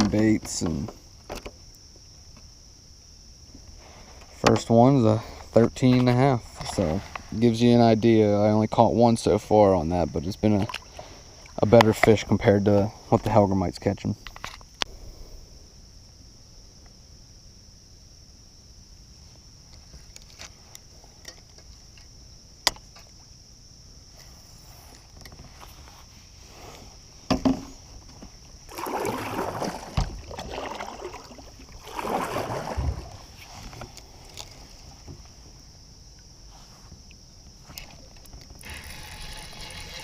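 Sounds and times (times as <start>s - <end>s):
high insect drone: 0.0s - 40.0s
knocks against kayak: 27.3s - 27.7s
paddle water swishes: 28.7s - 34.5s.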